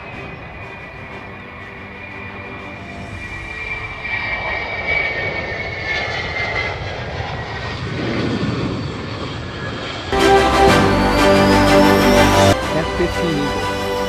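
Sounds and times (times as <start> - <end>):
jet engine roar and whine: 0.0 - 10.9.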